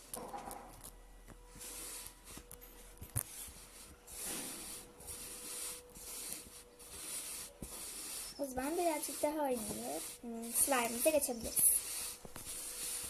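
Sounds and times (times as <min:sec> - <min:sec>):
sand gritty rustling: 0:04.5 - 0:13.0.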